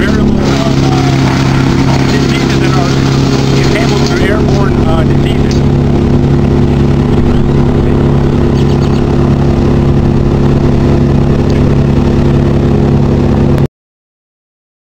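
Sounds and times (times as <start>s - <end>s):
engine running steadily: 0.0s - 13.7s.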